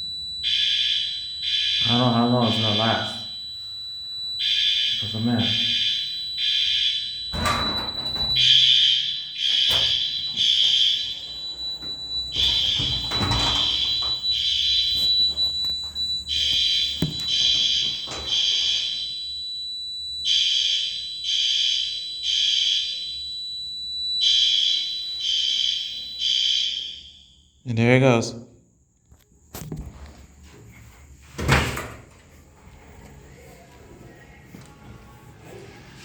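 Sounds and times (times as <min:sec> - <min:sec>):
fire alarm horn blasts: 0:00.0 - 0:27.7.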